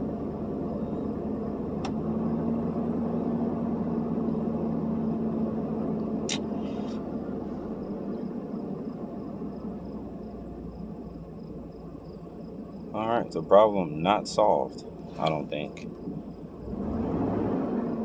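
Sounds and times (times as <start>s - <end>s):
engine idling: 0.0s - 18.0s.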